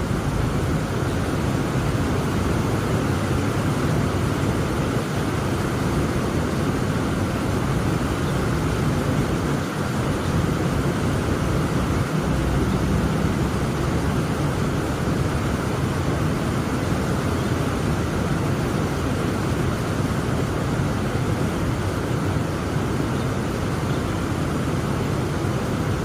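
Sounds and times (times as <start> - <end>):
heavy rain falling: 0.0 - 26.0.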